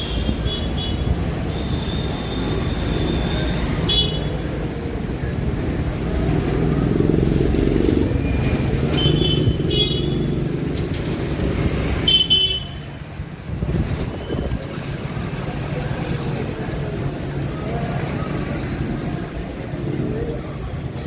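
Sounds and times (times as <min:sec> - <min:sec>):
traffic rumble: 0:00.0 - 0:21.0.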